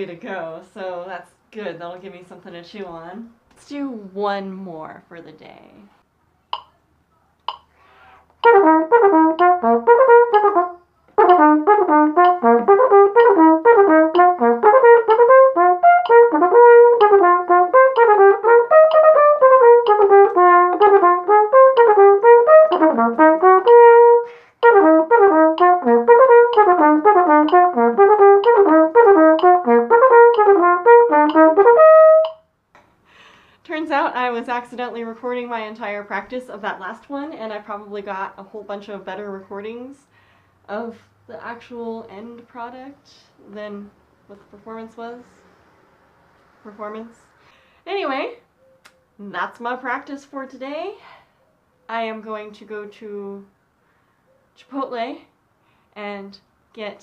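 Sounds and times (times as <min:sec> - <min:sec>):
flugelhorn playing quick notes: 0:08.4 - 0:32.4.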